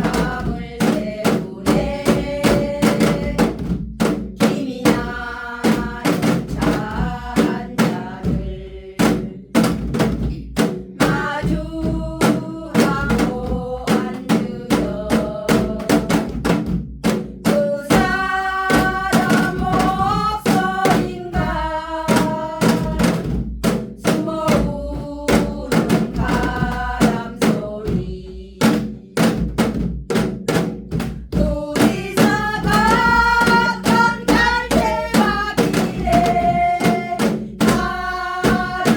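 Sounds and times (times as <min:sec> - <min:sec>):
hourglass drum rhythm: 0:00.0 - 0:38.9
person singing: 0:17.6 - 0:23.2, 0:31.4 - 0:38.9.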